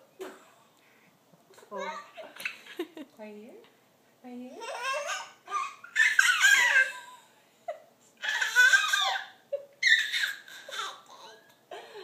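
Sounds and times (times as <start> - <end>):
baby laughing and squealing: 4.6 - 7.2, 8.2 - 11.3.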